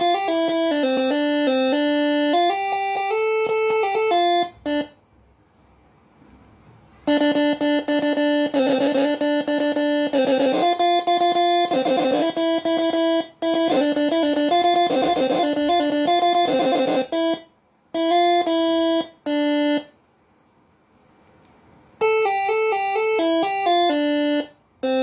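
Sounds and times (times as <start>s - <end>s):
multi-trumpet air horn melody: 7.0s - 19.9s.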